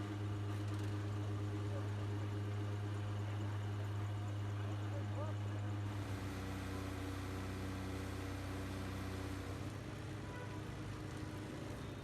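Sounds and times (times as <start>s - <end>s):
road and water noise: 3.2s - 12.0s.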